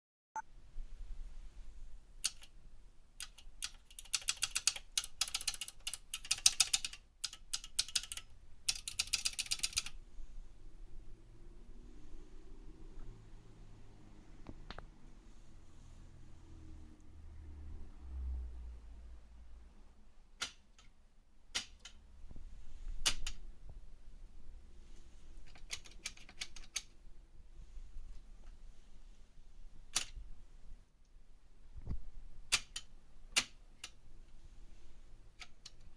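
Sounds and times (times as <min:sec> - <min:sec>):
keyboard keys clicking: 0:02.2 - 0:02.5, 0:03.2 - 0:10.0.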